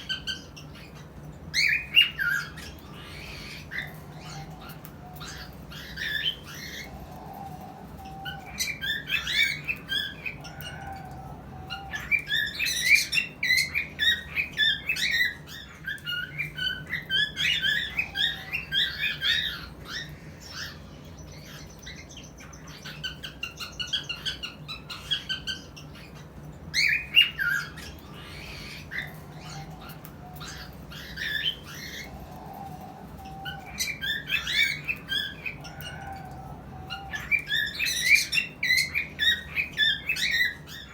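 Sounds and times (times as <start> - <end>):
cockatiels chirping and whistling: 0.0 - 40.9.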